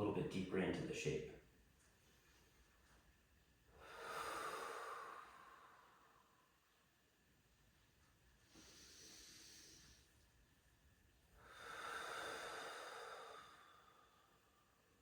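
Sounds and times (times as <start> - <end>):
slow deliberate breathing: 3.7 - 6.7, 8.4 - 10.3, 11.4 - 15.0.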